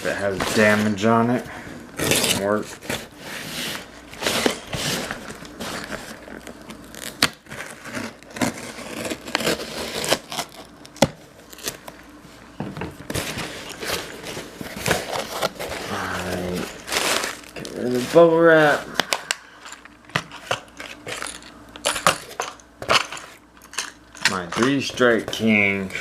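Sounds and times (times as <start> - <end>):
packaging rustling and crinkling: 0.0 - 12.2, 13.0 - 21.5
knife cutting package: 2.0 - 11.9.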